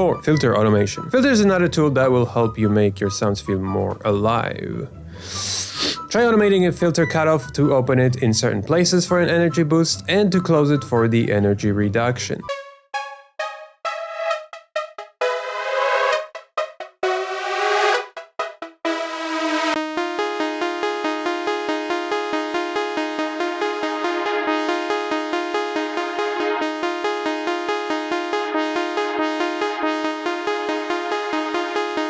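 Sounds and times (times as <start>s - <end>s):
pulsing synthesizer chords: 12.4s - 32.0s.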